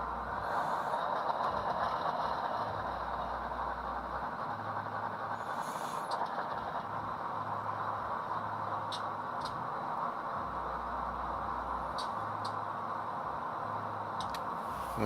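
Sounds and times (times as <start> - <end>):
model locomotive engine rumble: 0.0 - 15.0
hissy bursts: 0.3 - 1.3, 5.3 - 6.2.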